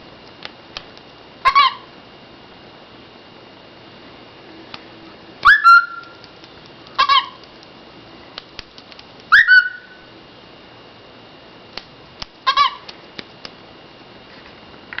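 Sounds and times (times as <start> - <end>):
pet bird calling: 1.4 - 1.9, 5.4 - 6.3, 6.9 - 7.5, 9.3 - 10.0, 12.4 - 12.9.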